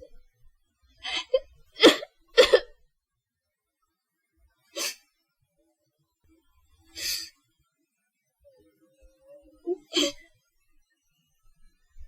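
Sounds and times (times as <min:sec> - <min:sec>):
person sobbing: 0:09.7 - 0:10.2.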